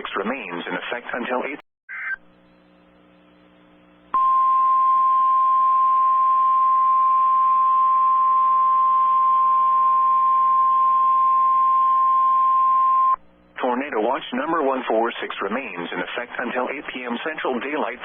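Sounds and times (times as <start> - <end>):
faint radio hiss and hum: 0.0 - 4.2, 13.2 - 18.0.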